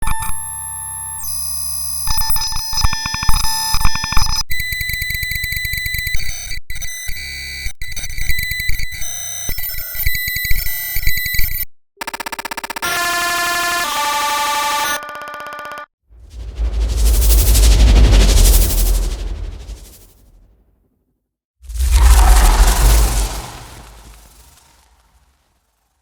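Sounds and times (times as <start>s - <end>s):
electronic buzzing and beeping: 12.0s - 15.9s.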